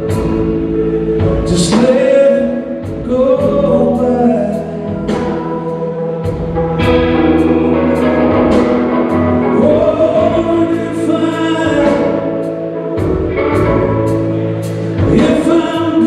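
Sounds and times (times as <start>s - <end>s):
lead singer: 0.0s - 16.0s
live band playing a ballad: 0.0s - 16.0s.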